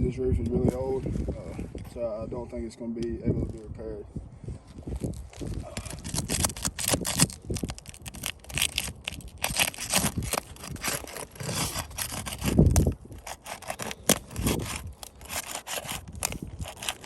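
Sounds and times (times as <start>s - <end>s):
roof shingle scraping and crackling: 4.9s - 17.0s
shingle tearing: 5.0s - 17.0s.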